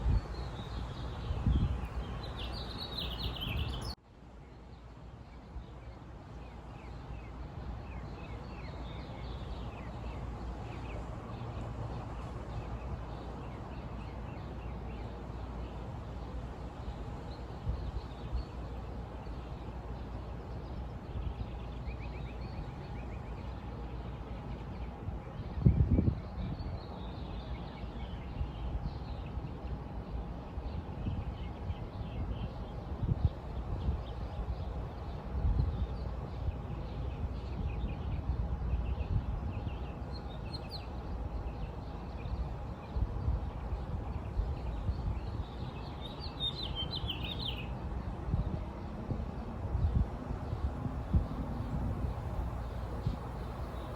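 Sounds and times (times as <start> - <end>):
birds chirping: 0.0 - 4.0, 26.2 - 47.8.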